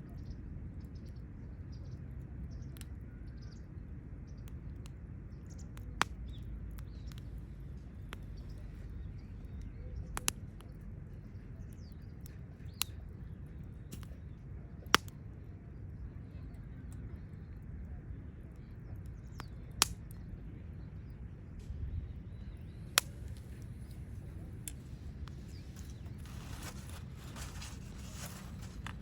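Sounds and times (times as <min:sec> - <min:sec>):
steady low rumble: 0:00.0 - 0:29.0
campfire crackling: 0:04.0 - 0:29.0
sharp fire pops: 0:04.4 - 0:10.8, 0:13.8 - 0:15.2, 0:19.2 - 0:20.3, 0:21.6 - 0:29.0.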